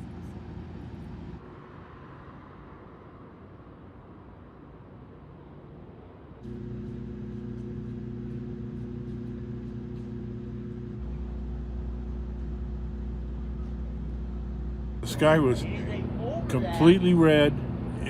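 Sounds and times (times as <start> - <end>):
vehicle engine humming: 0.0 - 1.4, 6.4 - 18.0.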